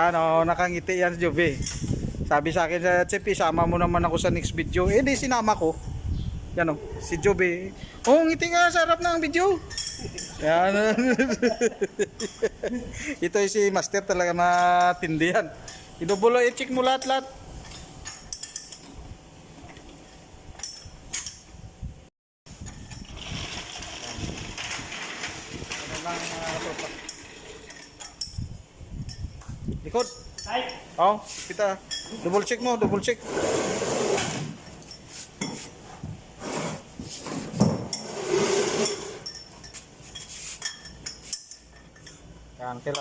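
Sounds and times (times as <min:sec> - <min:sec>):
hand tools clinking: 0:09.7 - 0:10.5, 0:11.4 - 0:12.8, 0:14.5 - 0:19.1, 0:19.8 - 0:21.5, 0:25.7 - 0:28.5, 0:29.1 - 0:32.7, 0:38.8 - 0:42.3
faint hiss: 0:30.7 - 0:32.7.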